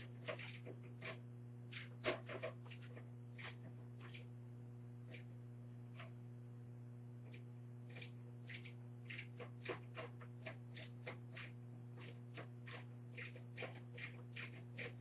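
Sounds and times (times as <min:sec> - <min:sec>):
fan clicking and scraping: 0:00.0 - 0:04.3, 0:07.2 - 0:15.0
low electrical hum: 0:00.0 - 0:15.0.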